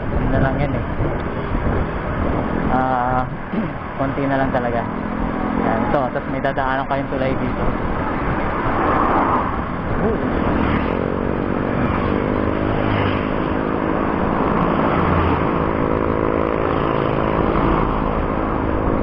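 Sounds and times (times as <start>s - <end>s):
vehicle engine droning: 0.0s - 19.0s
wind on microphone: 0.0s - 19.0s.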